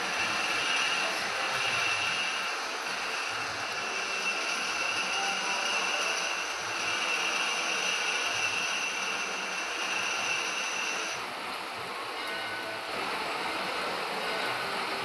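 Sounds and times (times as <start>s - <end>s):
high whine of cutting: 0.0s - 11.3s
lathe running: 0.0s - 15.0s.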